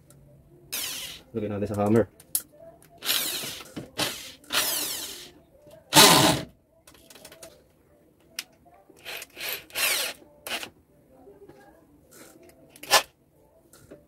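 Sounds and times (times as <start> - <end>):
hammer drill bursts: 3.0 - 5.2.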